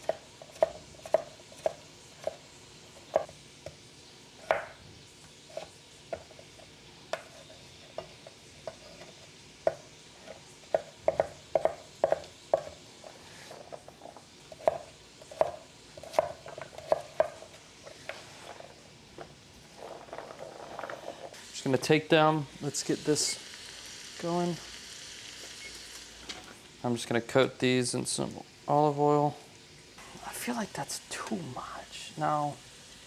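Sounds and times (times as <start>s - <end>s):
knife cutting on a cutting board: 0.0s - 3.3s, 5.5s - 18.8s.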